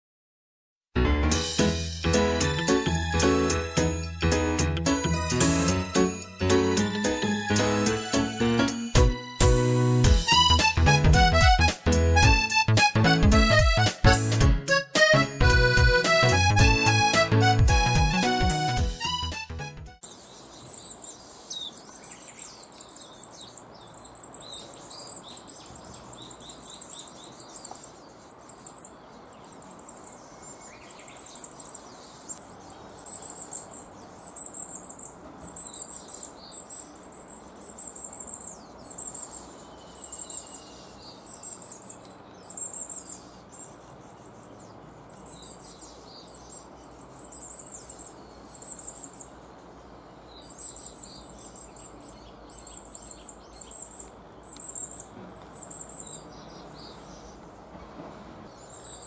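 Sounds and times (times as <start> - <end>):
small birds calling: 20.0 - 59.0.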